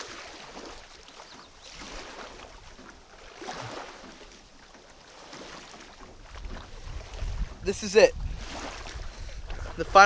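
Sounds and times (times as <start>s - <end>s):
water lapping at shore: 0.0s - 10.0s
wind noise: 6.2s - 10.0s.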